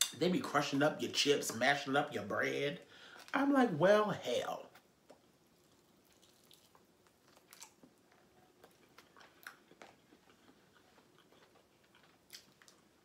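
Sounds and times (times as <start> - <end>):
chewing and crunching: 4.7 - 13.0.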